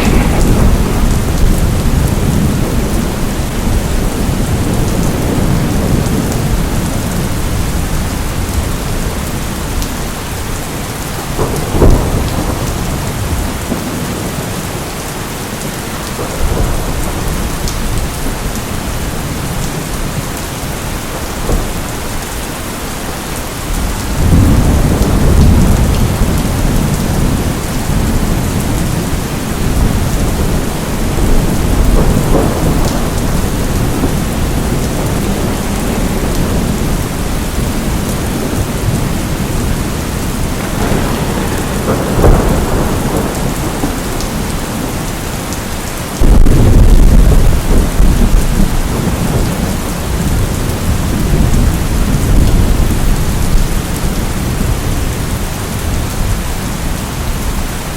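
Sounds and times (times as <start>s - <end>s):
sharp thunderclap: 0.0s - 8.0s, 11.3s - 14.5s, 24.1s - 54.6s
rolling thunder: 0.0s - 9.8s, 10.4s - 14.9s, 16.0s - 22.4s, 23.7s - 57.6s
steady rain: 0.0s - 57.9s.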